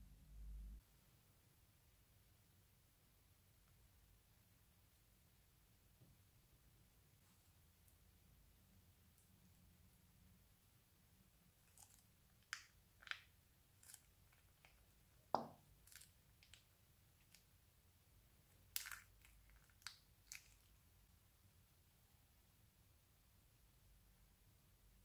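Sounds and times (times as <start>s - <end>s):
slime crackling and popping: 11.6s - 17.5s, 18.5s - 20.8s.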